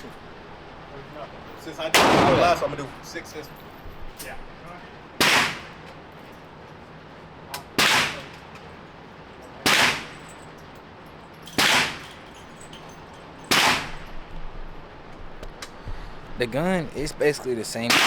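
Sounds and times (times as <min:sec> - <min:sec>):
gunshots with echo: 0:01.9 - 0:03.0, 0:05.2 - 0:05.8, 0:07.8 - 0:08.4, 0:09.6 - 0:10.2, 0:11.6 - 0:12.2, 0:13.5 - 0:14.1, 0:17.8 - 0:18.0.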